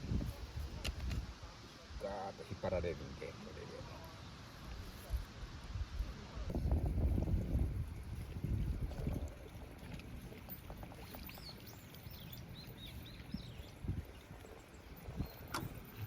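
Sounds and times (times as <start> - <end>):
water swishing and sloshing: 6.5 - 16.0
bird chirping: 11.1 - 16.0.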